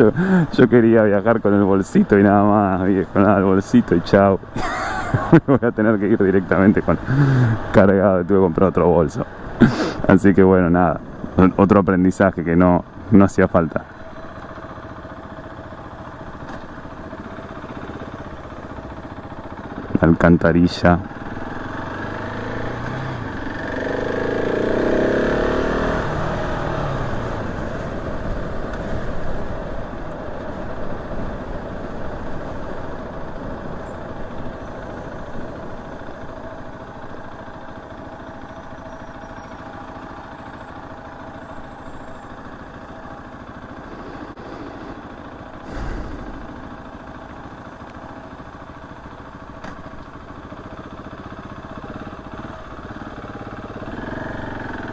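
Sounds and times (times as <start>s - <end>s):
wind and road noise: 0.0s - 54.9s
motorcycle engine accelerating: 13.8s - 20.2s, 21.0s - 54.9s.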